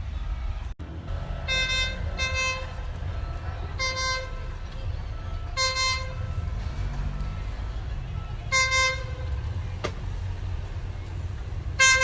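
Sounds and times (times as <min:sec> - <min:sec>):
low rumble of passing train: 0:00.0 - 0:12.0
train horn blasts: 0:01.2 - 0:04.6, 0:05.2 - 0:07.4, 0:08.4 - 0:09.6, 0:11.7 - 0:12.0.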